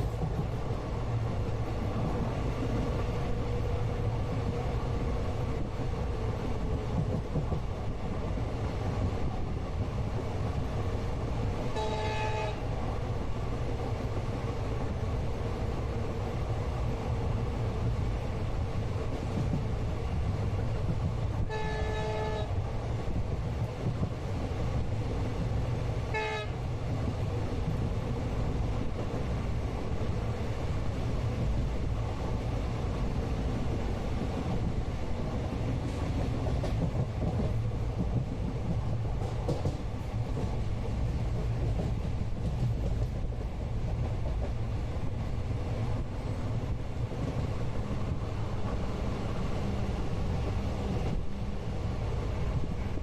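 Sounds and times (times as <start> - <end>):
train rumble from inside coach: 0.0 - 53.0
train horn: 11.7 - 12.8, 21.4 - 22.6, 26.1 - 26.7.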